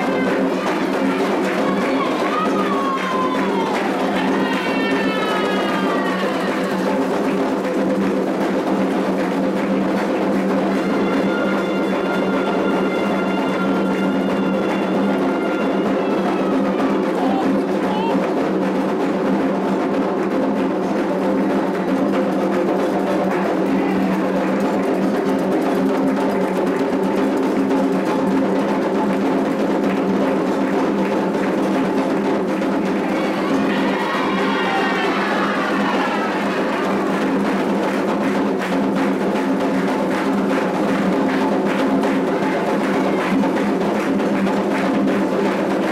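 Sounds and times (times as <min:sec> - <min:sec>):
drums and percussion: 0:00.0 - 0:45.9
voices singing: 0:32.9 - 0:37.7.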